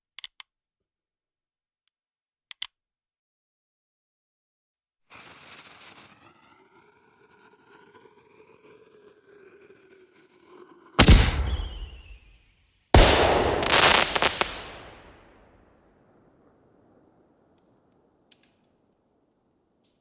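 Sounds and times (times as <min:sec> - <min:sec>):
weapon blasts: 0:11.0 - 0:12.2, 0:13.0 - 0:15.4.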